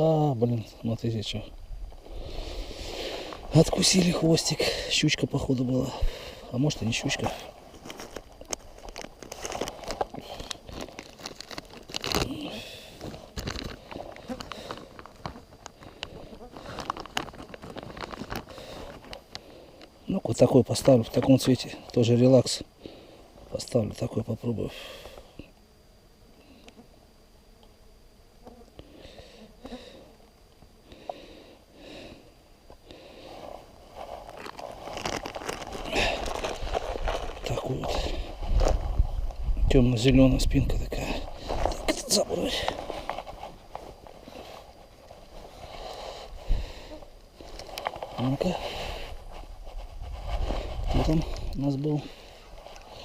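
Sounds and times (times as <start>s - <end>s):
fishing tackle rustling and clicking: 7.7s - 12.4s, 13.0s - 19.9s, 34.2s - 37.6s, 47.3s - 48.2s.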